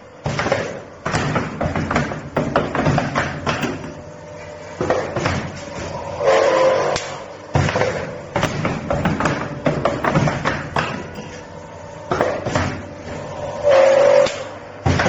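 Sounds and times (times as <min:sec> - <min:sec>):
machine clattering metal knocks: 0:00.3 - 0:05.6, 0:07.6 - 0:13.0.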